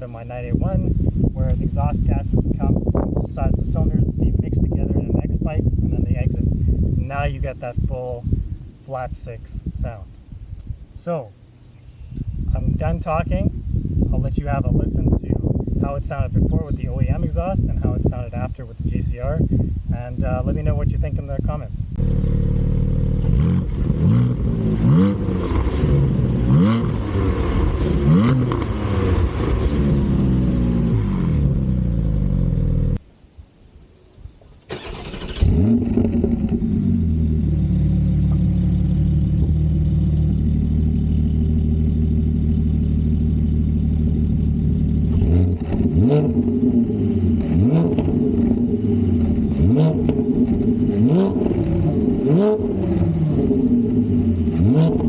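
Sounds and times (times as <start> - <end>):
engine revving blips: 22.0 - 33.0, 45.0 - 55.0
engine starting with loud flare: 34.7 - 36.7
engine idling: 36.4 - 45.4.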